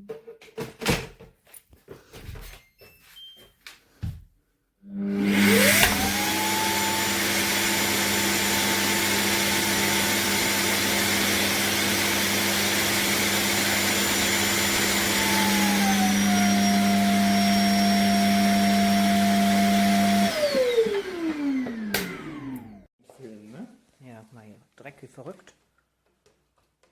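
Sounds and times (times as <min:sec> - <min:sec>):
vacuum cleaner motor whine: 0:04.9 - 0:22.9.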